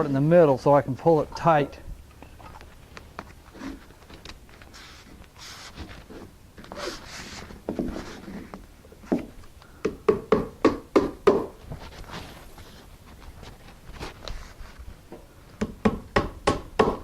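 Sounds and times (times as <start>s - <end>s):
felt paper rustling: 11.6s - 15.0s.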